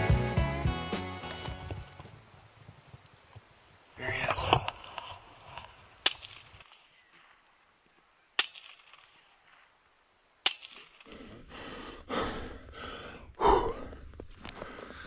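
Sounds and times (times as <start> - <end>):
sharp cracks: 8.4 - 9.7, 10.4 - 11.2.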